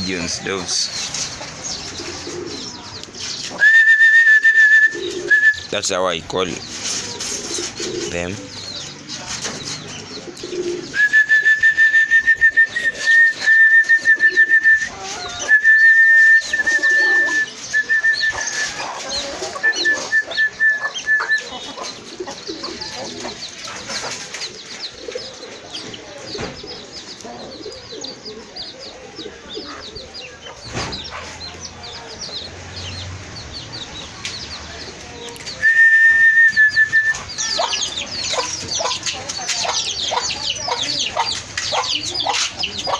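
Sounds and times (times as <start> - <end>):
birds chirping: 0.0 - 42.9
person whistling a high note: 35.6 - 37.2.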